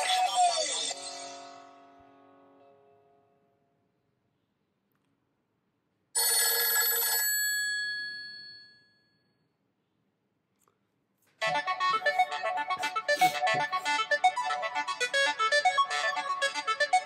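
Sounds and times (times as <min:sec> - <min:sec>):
ringtone melody: 0:11.4 - 0:17.0.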